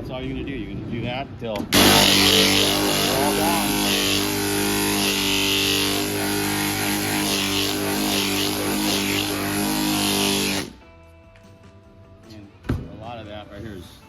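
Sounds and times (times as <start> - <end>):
motor-driven machine humming: 1.8 - 10.8.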